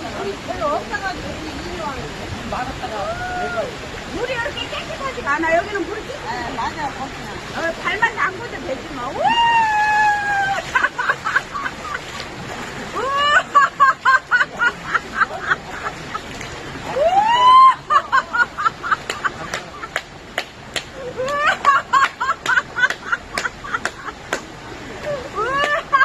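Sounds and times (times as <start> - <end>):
rushing stream water: 0.0 - 26.0
women laughing loudly: 9.8 - 12.2, 13.0 - 16.3, 17.0 - 20.0, 21.0 - 24.3, 25.0 - 26.0.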